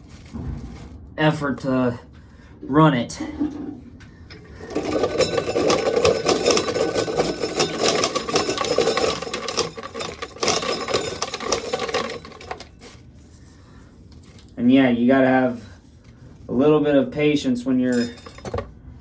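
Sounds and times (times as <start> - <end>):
corn sheller rattling and grinding: 4.3 - 13.0, 17.9 - 18.7.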